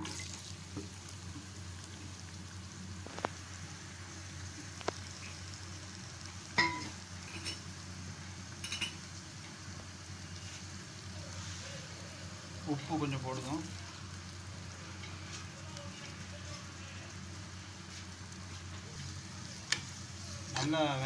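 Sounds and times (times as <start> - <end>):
onions sizzling in hot oil: 0.0 - 21.0
spatula clinking against pan: 6.6 - 7.6.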